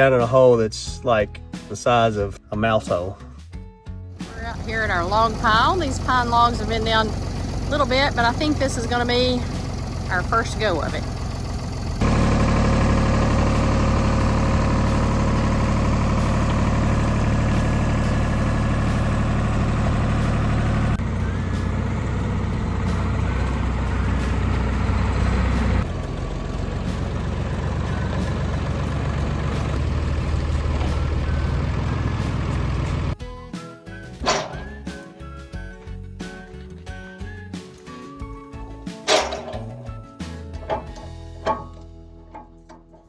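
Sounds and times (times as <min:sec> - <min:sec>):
tractor engine running: 0:04.2 - 0:33.2, 0:34.2 - 0:35.0, 0:38.6 - 0:43.0.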